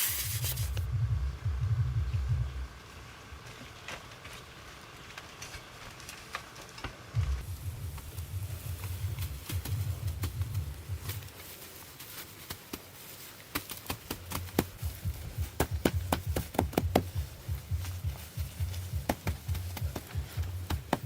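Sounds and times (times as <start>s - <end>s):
sharp irregular knocks and taps: 15.6s - 17.1s.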